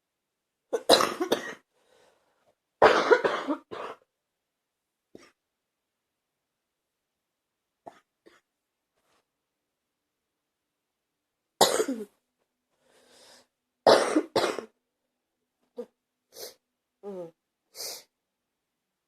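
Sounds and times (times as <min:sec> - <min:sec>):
person breathing: 0:01.7 - 0:02.5, 0:12.7 - 0:13.6
person coughing: 0:02.8 - 0:04.0, 0:11.6 - 0:12.1, 0:13.9 - 0:14.8.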